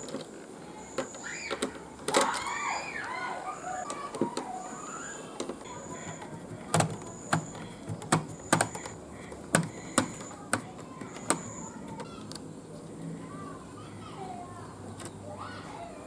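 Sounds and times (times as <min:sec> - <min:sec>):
plastic parts clicking: 0:00.0 - 0:00.4, 0:01.0 - 0:03.2, 0:05.4 - 0:12.4.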